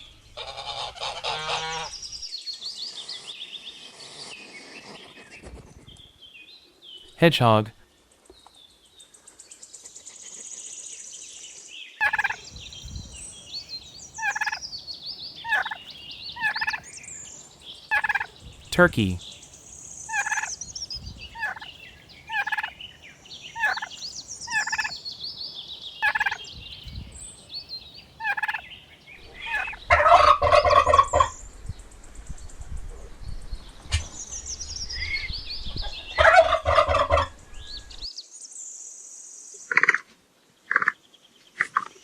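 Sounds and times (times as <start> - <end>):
turkey rattling gobbles: 12.0 - 28.7, 29.5 - 29.8
small birds chirping: 12.0 - 29.9
turkey calls: 12.0 - 31.3.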